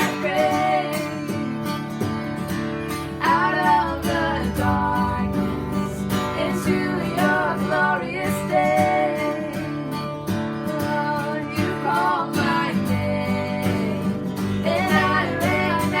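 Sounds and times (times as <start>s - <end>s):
person singing: 0.0s - 1.7s, 3.2s - 16.0s
acoustic guitar strumming: 0.0s - 16.0s.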